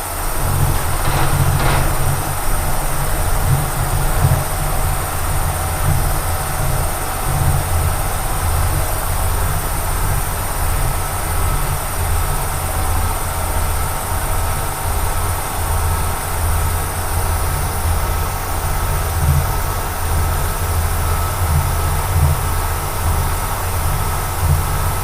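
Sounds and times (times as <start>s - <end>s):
milling machine cutting metal: 0.4s - 3.4s.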